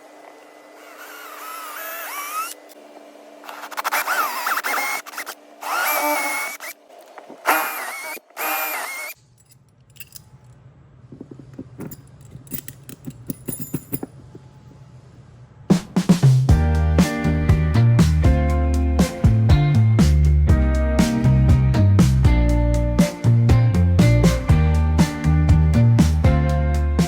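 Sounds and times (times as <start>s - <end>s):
power drill whine: 0.0s - 2.8s, 3.4s - 9.2s
low steady hum: 0.0s - 15.7s
metallic clicking and rattling: 9.3s - 10.6s, 11.2s - 14.4s.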